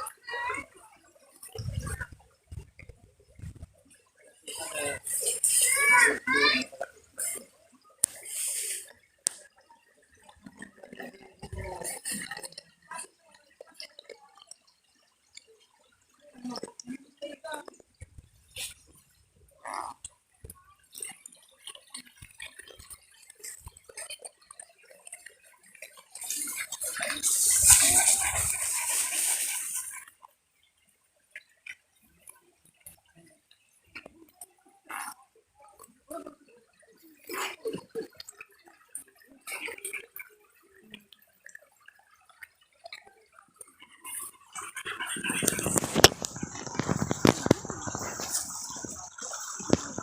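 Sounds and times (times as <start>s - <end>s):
river water trickling: 0.0s - 50.0s
rush of splashing water: 20.9s - 30.2s, 42.2s - 50.0s.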